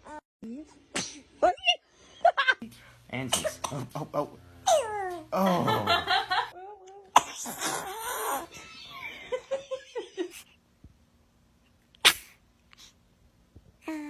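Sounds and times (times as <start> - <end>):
baby sneezing: 0.9 - 1.3, 7.1 - 8.3, 12.0 - 12.4.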